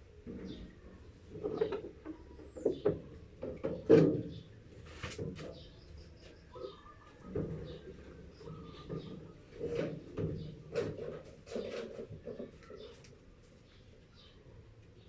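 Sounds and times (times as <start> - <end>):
clicks scrapes and knocks of handling parts: 8.6 - 13.6.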